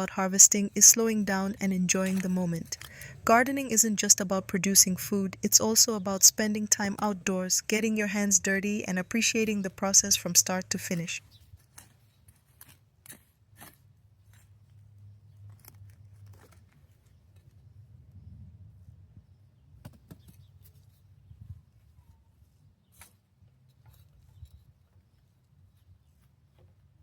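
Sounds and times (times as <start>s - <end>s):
low steady hum: 0.0s - 11.4s
potatoes dug from soil: 0.0s - 17.7s.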